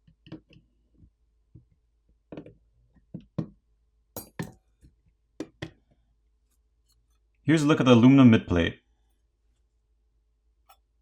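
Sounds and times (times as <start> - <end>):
screws and screwdriver clinking on metal: 4.2 - 4.6.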